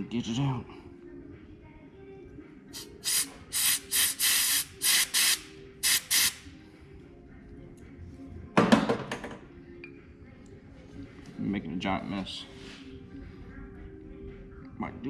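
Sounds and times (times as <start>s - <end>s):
compressed air blasts: 2.8s - 6.5s.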